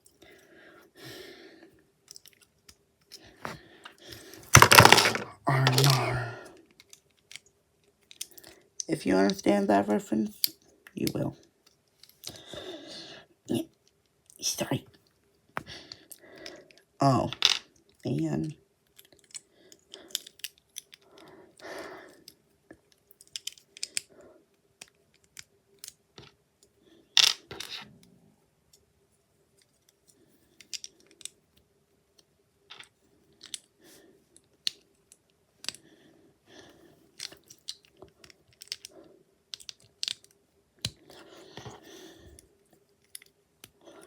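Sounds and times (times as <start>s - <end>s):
plastic bricks clicking together: 4.4s - 6.2s, 20.0s - 21.0s, 23.2s - 24.1s, 37.2s - 38.9s, 39.5s - 41.7s.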